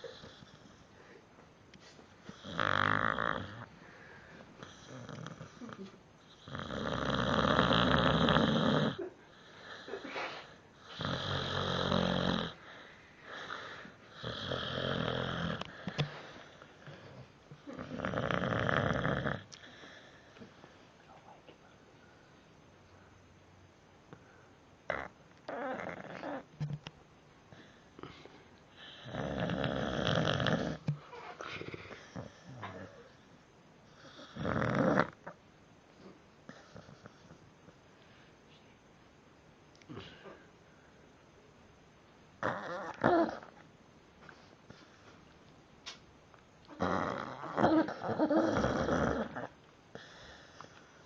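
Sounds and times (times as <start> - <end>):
dog snoring: 2.3 - 3.7, 4.6 - 10.0, 10.8 - 20.3, 24.9 - 26.5, 28.8 - 31.0, 33.9 - 35.4, 42.4 - 43.6, 46.7 - 50.8.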